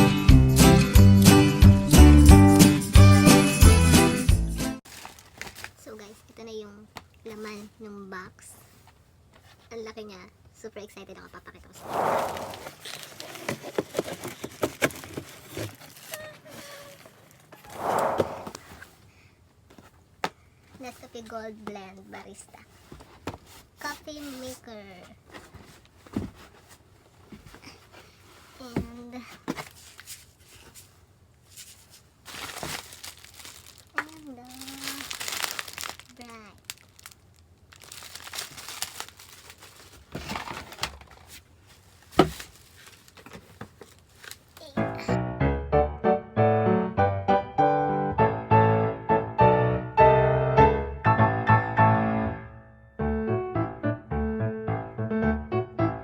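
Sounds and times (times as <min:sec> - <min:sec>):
packaging rustle: 0:04.8 - 0:05.9, 0:12.4 - 0:17.6, 0:29.4 - 0:44.8
packaging clicks and knocks: 0:13.1 - 0:16.2
brief squeak: 0:16.1 - 0:17.1.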